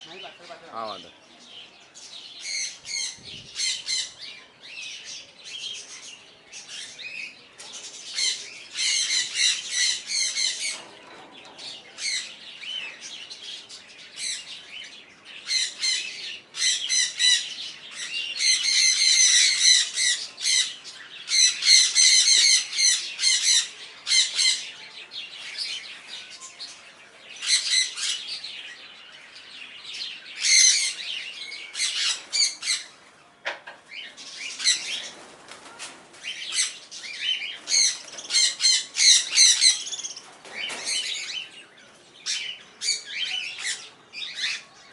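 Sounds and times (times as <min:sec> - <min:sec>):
parrots squawking: 0:37.7 - 0:39.9.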